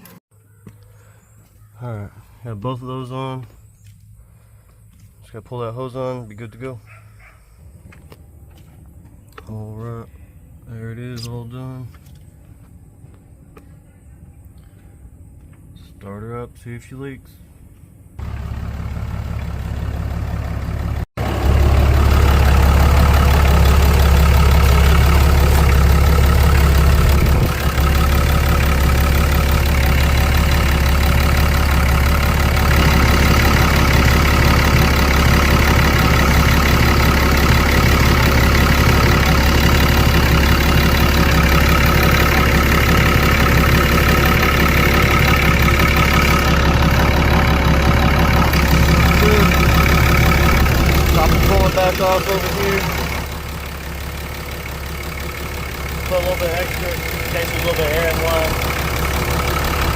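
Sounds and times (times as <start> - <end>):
pickup engine idling: 17.6 - 59.9.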